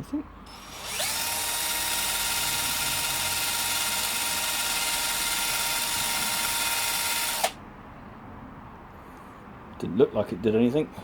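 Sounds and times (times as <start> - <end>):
electric drill whining: 0.5 - 7.6.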